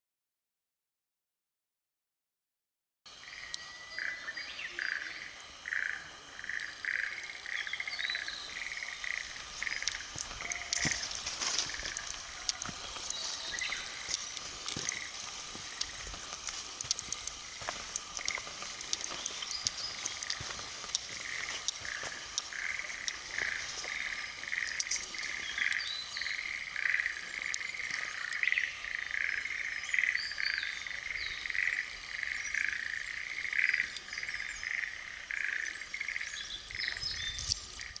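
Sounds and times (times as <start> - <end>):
frogs croaking: 3.1 - 38.0.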